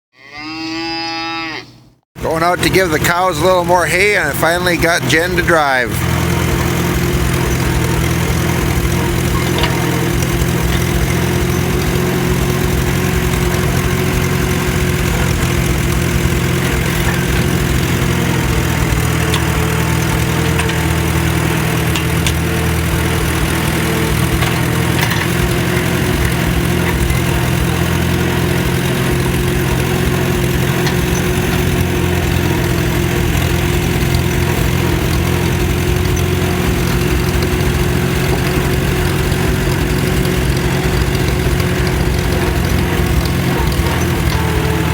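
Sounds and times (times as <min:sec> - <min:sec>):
tractor engine running: 0:02.2 - 0:44.9.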